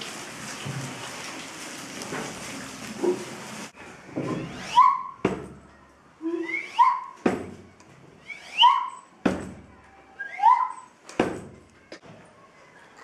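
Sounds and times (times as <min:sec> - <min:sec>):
whistled chirp sliding up: 0:06.2 - 0:07.2, 0:08.2 - 0:09.1, 0:10.2 - 0:10.9.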